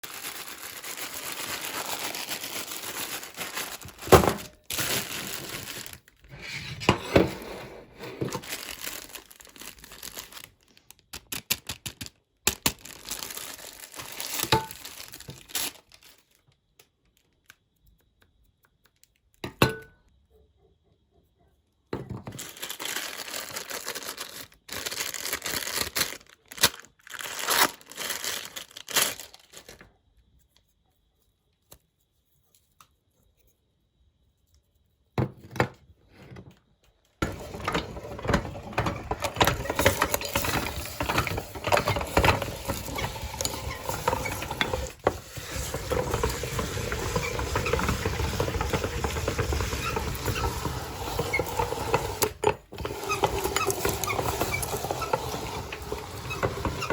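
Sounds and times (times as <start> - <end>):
packaging crinkling and tearing: 0.0 - 6.3, 8.2 - 17.6, 22.3 - 29.9
meat grinder churning: 37.2 - 56.9.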